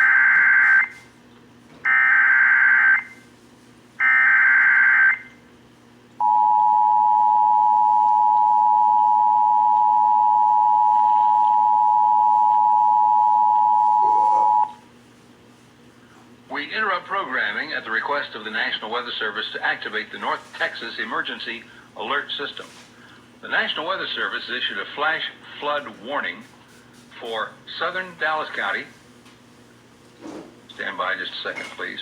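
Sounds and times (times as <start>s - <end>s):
two-tone attention signal: 6.2s - 14.8s.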